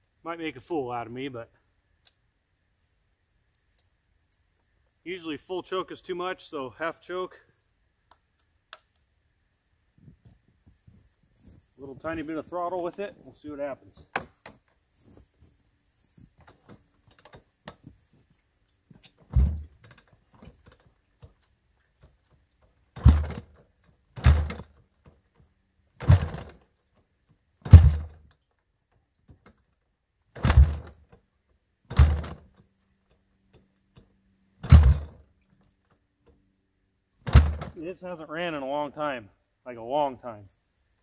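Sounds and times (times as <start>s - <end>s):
engine kick-start thumps: 19.3s - 20.9s, 22.9s - 23.6s, 24.2s - 24.8s, 26.0s - 26.6s, 27.6s - 28.2s, 30.4s - 31.0s, 31.9s - 32.6s, 34.6s - 35.2s, 37.2s - 37.8s.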